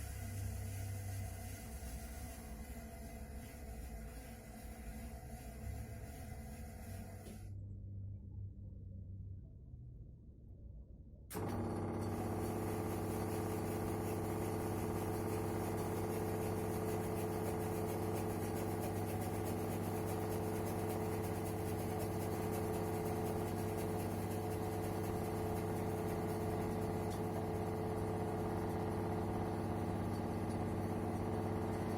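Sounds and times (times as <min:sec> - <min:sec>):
washing machine humming: 0:11.3 - 0:31.9.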